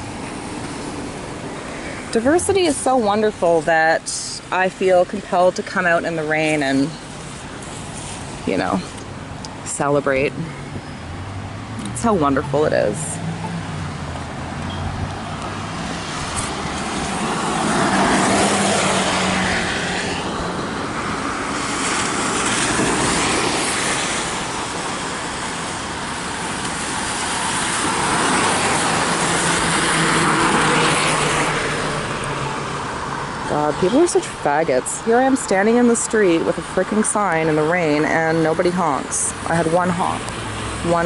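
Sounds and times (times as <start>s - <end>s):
car tyres hissing on wet road: 7.0s - 8.4s, 15.5s - 33.4s.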